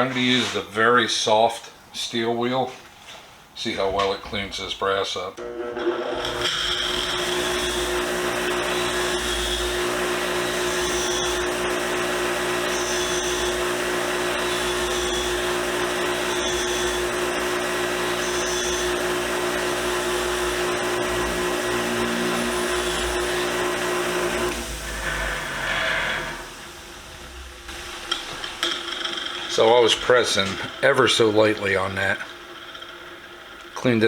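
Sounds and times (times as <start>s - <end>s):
power tool motor humming: 5.4s - 28.7s.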